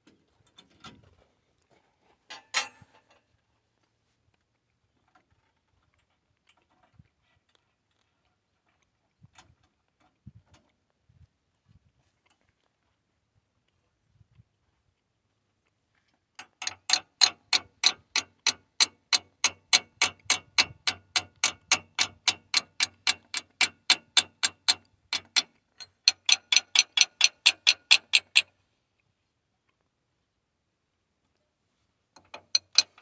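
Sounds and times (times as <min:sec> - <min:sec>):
gear and ratchet clicking: 0:16.4 - 0:28.5, 0:32.2 - 0:33.0.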